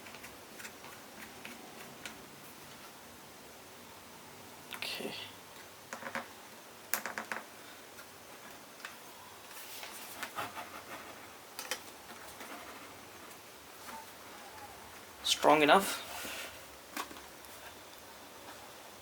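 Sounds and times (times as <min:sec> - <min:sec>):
plastic scraping and rubbing: 0:12.1 - 0:14.1.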